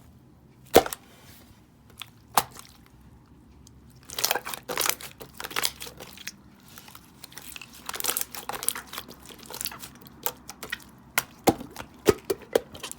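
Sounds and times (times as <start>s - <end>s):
slime crackling and popping: 4.0s - 12.9s.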